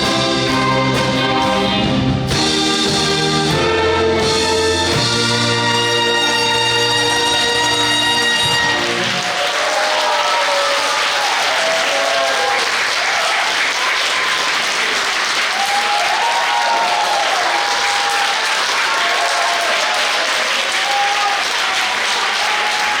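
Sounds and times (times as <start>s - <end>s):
audience applauding: 5.2s - 23.0s.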